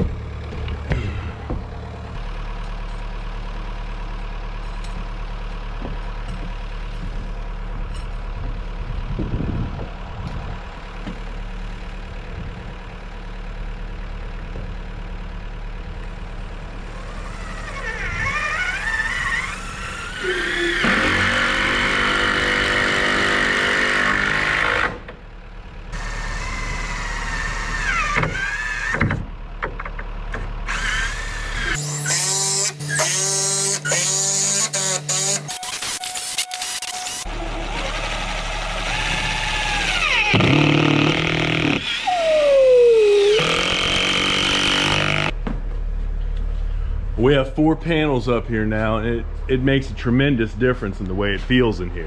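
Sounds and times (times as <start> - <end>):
excavator diesel engine running: 0.0 - 31.7, 35.4 - 52.0
hydraulic whine: 16.3 - 25.2, 25.9 - 45.4.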